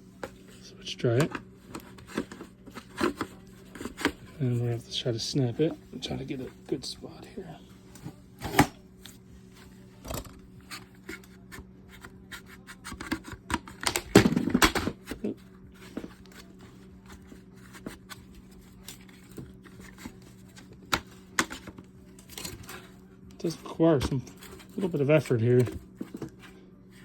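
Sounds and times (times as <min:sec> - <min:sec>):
plastic clicking and scraping: 0:01.1 - 0:04.4, 0:10.0 - 0:26.5.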